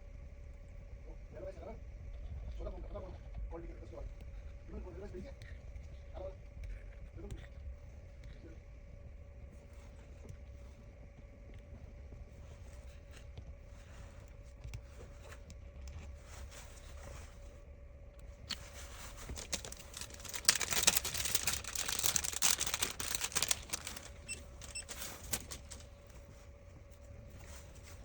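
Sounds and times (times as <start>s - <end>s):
plastic film crinkling and peeling: 18.5s - 28.0s
scattered clicks: 19.4s - 25.9s.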